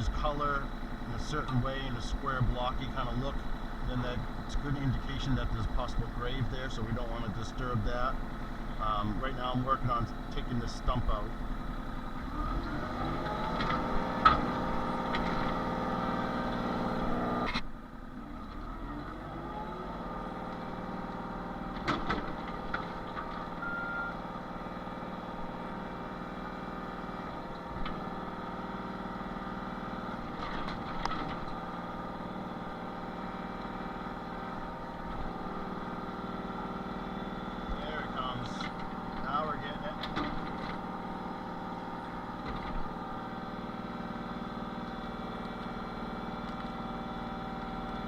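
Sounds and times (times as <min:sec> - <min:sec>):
excavator diesel engine: 0:00.0 - 0:48.0
short beep: 0:23.6 - 0:24.2.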